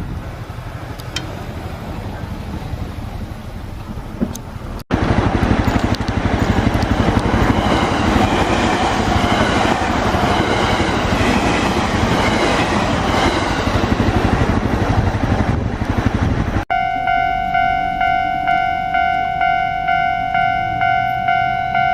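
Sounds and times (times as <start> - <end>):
train wheels rumbling on rail: 0.0 - 16.6.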